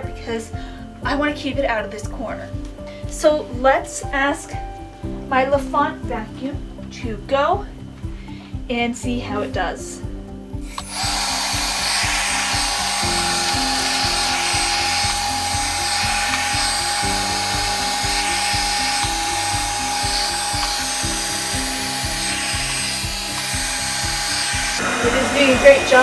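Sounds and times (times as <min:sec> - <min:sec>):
background music: 0:00.0 - 0:26.0
robot vacuum whining and hissing: 0:10.6 - 0:25.0.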